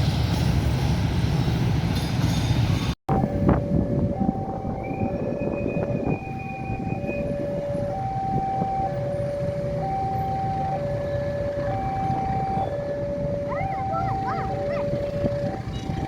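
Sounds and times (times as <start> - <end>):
two-tone crossing alarm: 3.1 - 16.0
whistling chirps: 4.8 - 7.2.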